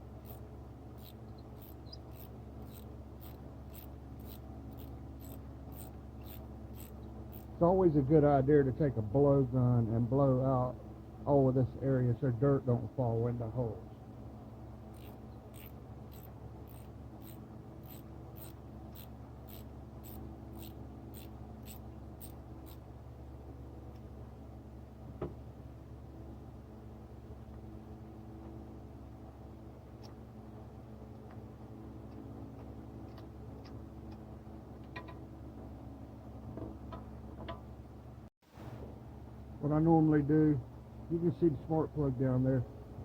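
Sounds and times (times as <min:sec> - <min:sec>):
low shop hum: 0:00.0 - 0:43.0
ratchet clicking: 0:00.2 - 0:00.4, 0:01.0 - 0:07.6, 0:14.9 - 0:22.8.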